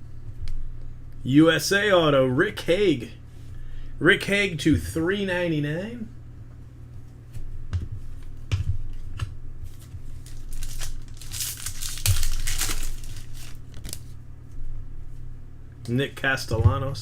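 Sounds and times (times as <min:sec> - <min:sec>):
wrapper crinkling and tearing: 0:09.7 - 0:14.2.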